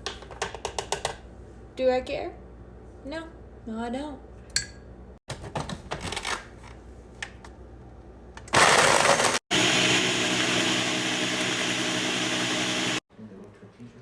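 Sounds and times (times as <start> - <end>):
blender running: 8.5 - 13.0.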